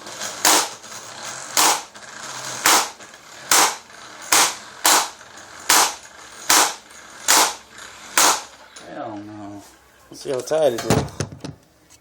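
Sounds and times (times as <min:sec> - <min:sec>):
impact wrench hammering: 0:00.4 - 0:00.9, 0:01.5 - 0:08.6.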